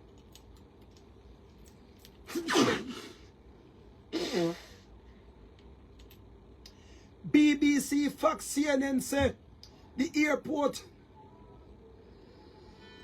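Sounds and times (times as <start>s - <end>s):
man sneezing: 2.3s - 3.3s, 4.1s - 4.8s.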